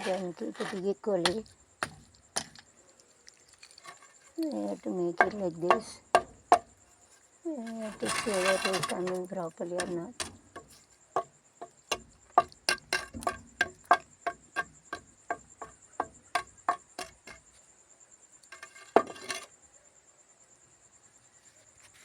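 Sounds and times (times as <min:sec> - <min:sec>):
brick tapped into mortar: 0:09.8 - 0:17.4.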